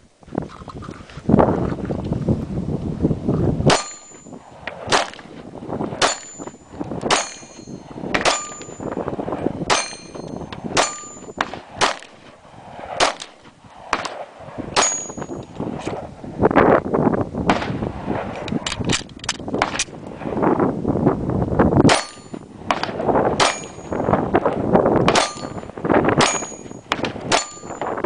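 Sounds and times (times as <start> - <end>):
pistol shots: 3.7 - 4.2, 4.8 - 5.3, 6.0 - 9.0, 9.7 - 15.3, 21.9 - 24.0, 25.1 - 27.9
steel targets clanging: 3.7 - 4.4, 6.0 - 9.0, 9.7 - 11.4, 14.8 - 15.5, 21.9 - 22.4, 23.4 - 24.2, 25.1 - 28.0.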